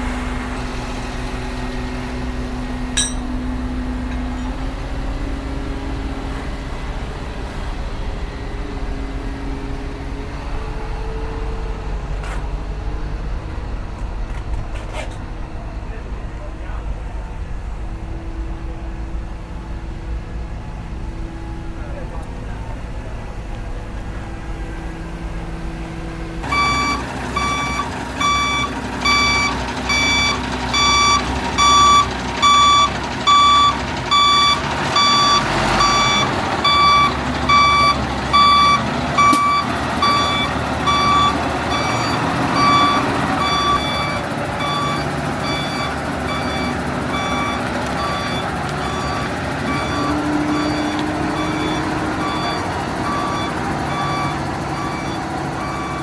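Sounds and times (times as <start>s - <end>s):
diesel engine running: 0.0s - 56.0s
reversing alarm beeping: 26.4s - 56.0s.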